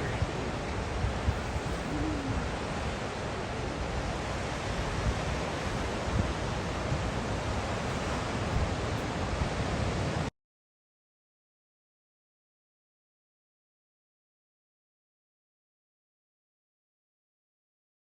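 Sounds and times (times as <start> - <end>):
ocean surf washing ashore: 0.0 - 10.3
wind buffeting microphone: 0.0 - 10.3.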